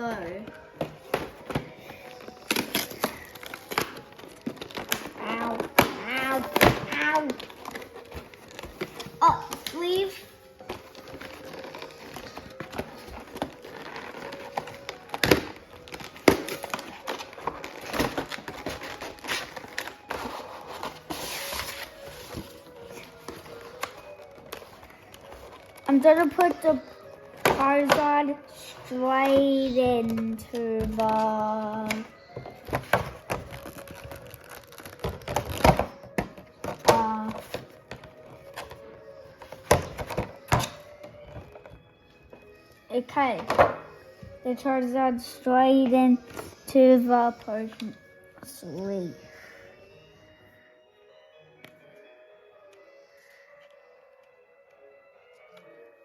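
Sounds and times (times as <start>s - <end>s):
plastic packaging crinkling: 2.0s - 27.3s, 32.1s - 38.8s.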